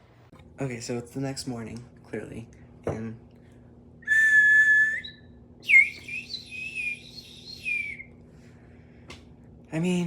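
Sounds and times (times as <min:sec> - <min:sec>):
water bird whistle: 0:04.0 - 0:08.1.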